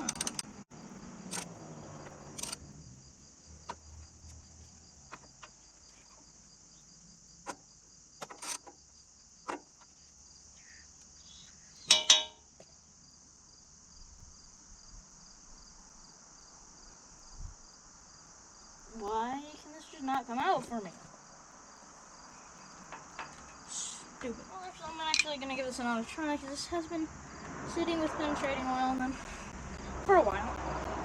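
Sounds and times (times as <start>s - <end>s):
hand tools clicking on metal: 0.0s - 0.5s, 2.3s - 2.6s, 11.9s - 12.4s, 25.1s - 25.3s
crickets chirping: 0.0s - 31.0s.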